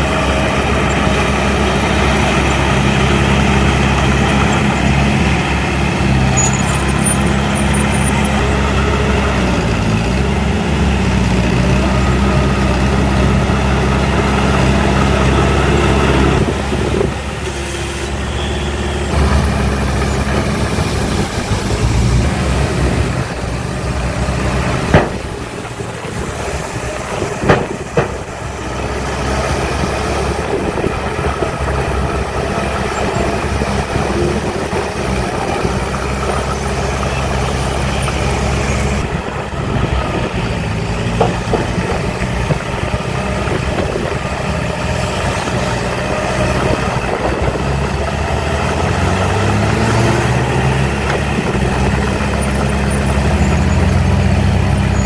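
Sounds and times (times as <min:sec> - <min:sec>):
heavy diesel machinery running: 0:00.0 - 0:55.0
sharp metallic knocks: 0:24.4 - 0:28.9.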